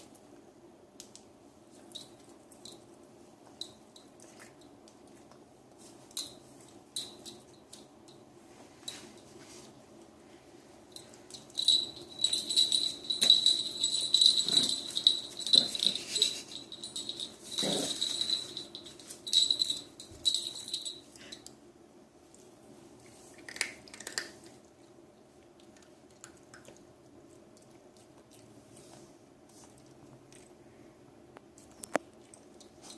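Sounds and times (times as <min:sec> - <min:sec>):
small bell jingling: 0:11.0 - 0:21.4.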